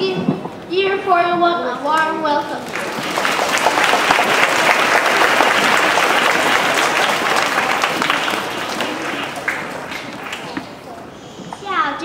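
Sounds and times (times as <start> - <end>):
audience clapping in a hall: 2.5 - 11.0.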